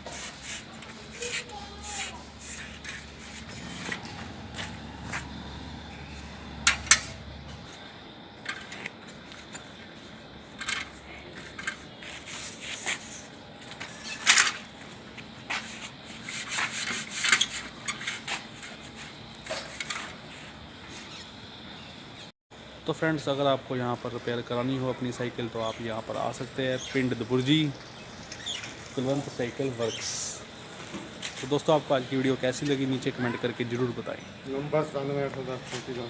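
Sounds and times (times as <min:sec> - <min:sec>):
metal tools clinking and scraping: 0:10.6 - 0:11.9, 0:13.8 - 0:14.7.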